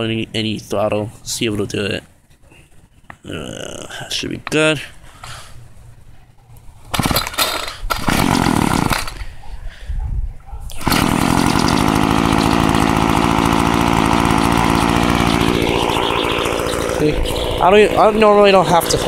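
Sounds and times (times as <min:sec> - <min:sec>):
small two-stroke engine running: 0:06.9 - 0:09.2, 0:10.7 - 0:19.0.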